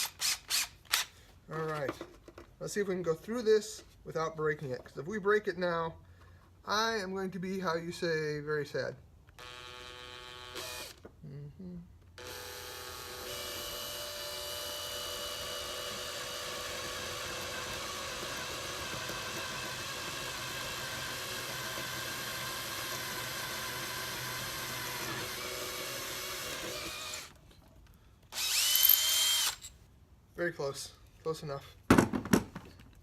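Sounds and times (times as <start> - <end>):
electric drill boring wood: 9.4 - 11.0, 12.2 - 27.4, 28.3 - 29.7.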